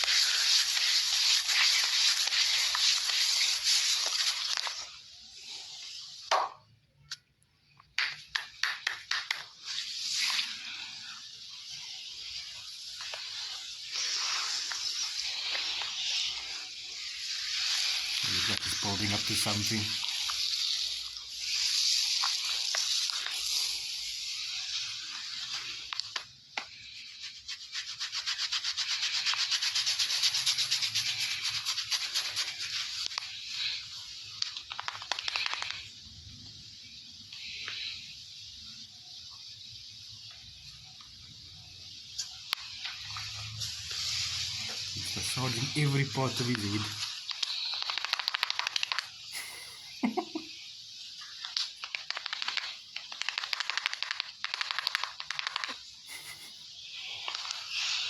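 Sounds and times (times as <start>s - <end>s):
hands scrubbing hair and scalp: 0.0s - 5.6s, 8.0s - 20.5s, 21.4s - 35.9s, 42.2s - 50.5s, 51.2s - 58.0s
fingers crackling through hair: 34.4s - 35.9s, 45.0s - 50.4s, 51.2s - 58.0s.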